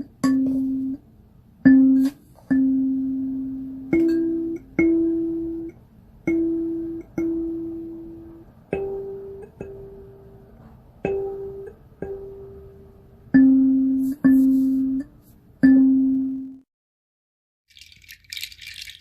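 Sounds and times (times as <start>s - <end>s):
plucked string melody: 1.6s - 5.7s, 6.3s - 16.6s.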